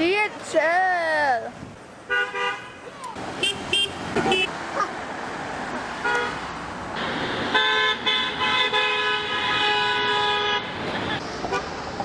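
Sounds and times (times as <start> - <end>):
passing traffic: 0.0 - 12.0
car horn honking: 2.1 - 4.5, 6.0 - 6.4, 7.0 - 11.6.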